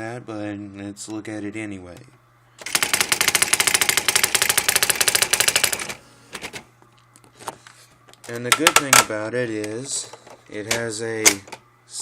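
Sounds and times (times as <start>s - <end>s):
electronic typewriter printing: 2.6s - 6.6s.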